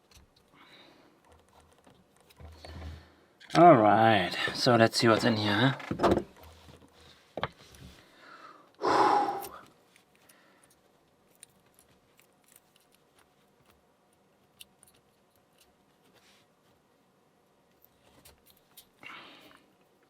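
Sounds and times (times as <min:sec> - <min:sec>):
loud breath: 0:08.0 - 0:10.6.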